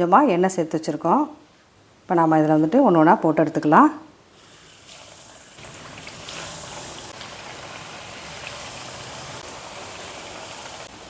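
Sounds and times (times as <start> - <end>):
food sizzling in hot oil: 4.3 - 11.0.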